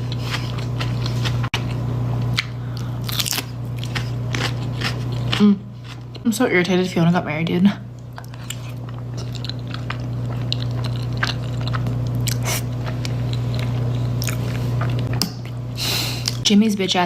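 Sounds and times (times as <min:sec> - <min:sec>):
close chewing noodles: 0:00.0 - 0:06.2, 0:08.0 - 0:15.2
steady low hum: 0:00.0 - 0:17.0.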